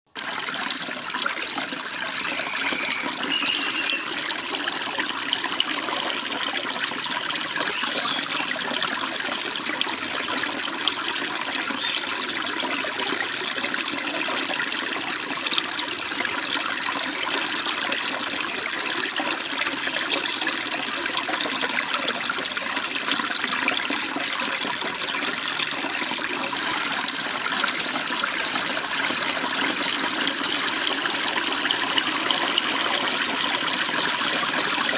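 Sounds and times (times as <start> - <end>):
stream babbling: 0.2 - 34.9
faint bird chirps: 2.0 - 4.3, 7.6 - 8.4, 11.7 - 12.2.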